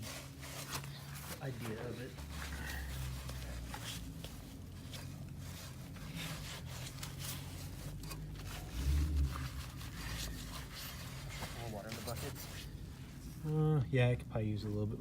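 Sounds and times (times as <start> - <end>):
cloth rubbing and scraping: 0.0 - 13.5
low rumble: 8.6 - 10.7.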